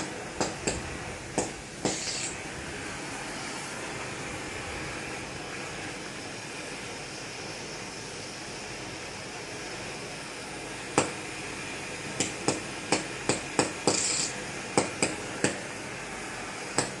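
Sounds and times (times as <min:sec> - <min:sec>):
steady background noise: 0:00.0 - 0:17.0
short hiss: 0:01.9 - 0:02.4.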